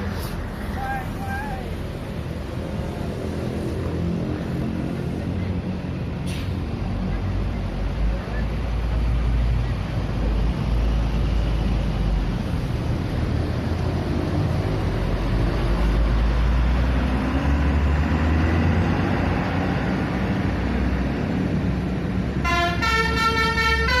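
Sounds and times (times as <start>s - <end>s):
bus engine rumbling: 0.0s - 24.0s
multi-tone bus horn playing tune: 22.4s - 24.0s.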